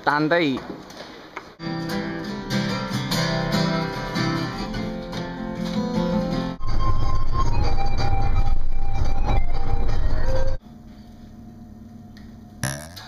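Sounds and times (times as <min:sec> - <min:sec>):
strummed guitar music: 0:01.6 - 0:06.6.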